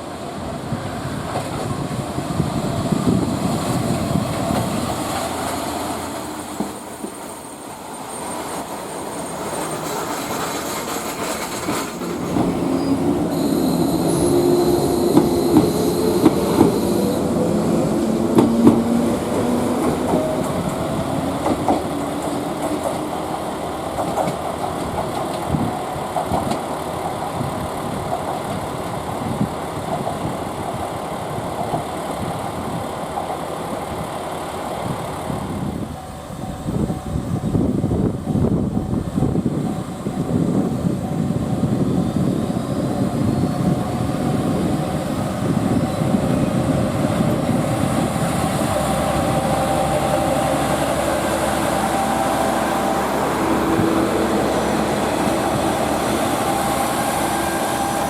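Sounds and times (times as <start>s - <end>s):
train wheels clacking: 1.2s - 35.2s
wheel squeal: 6.6s - 17.3s.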